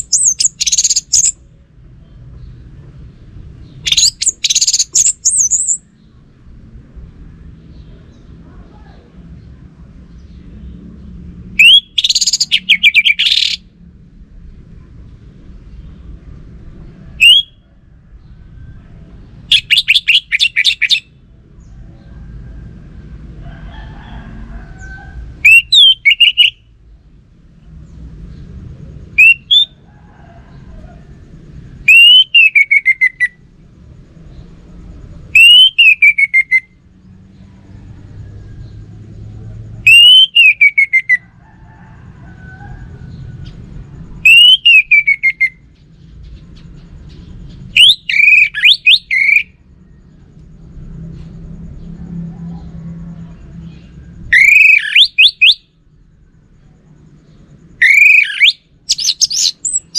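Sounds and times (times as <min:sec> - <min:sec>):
bird singing whistled phrases: 0:00.0 - 0:01.4, 0:03.9 - 0:05.8, 0:11.6 - 0:13.6, 0:17.2 - 0:17.6, 0:19.5 - 0:21.1, 0:25.4 - 0:26.6, 0:29.2 - 0:29.7, 0:31.9 - 0:33.4, 0:35.4 - 0:36.7, 0:39.9 - 0:41.2, 0:44.2 - 0:45.6, 0:47.8 - 0:49.5, 0:54.3 - 0:55.6, 0:57.8 - 0:59.9
faint low rumble: 0:00.0 - 0:20.5, 0:21.1 - 0:25.5, 0:33.2 - 0:35.4, 0:36.7 - 0:39.9, 0:41.3 - 0:44.3, 0:45.6 - 0:47.8, 0:49.5 - 0:54.4, 0:55.7 - 0:57.8.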